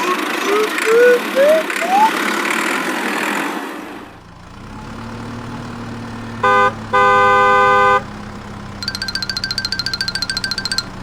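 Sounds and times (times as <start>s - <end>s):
low engine hum: 3.7s - 11.0s
vehicle horn honking: 6.4s - 8.1s.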